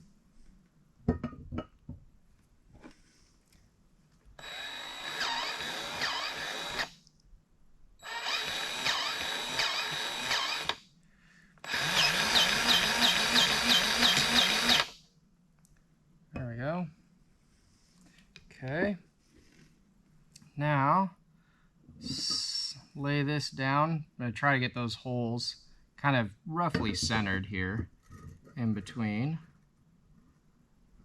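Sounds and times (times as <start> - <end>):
handheld power tool motor: 4.4 - 7.0, 8.0 - 10.8, 11.6 - 15.0.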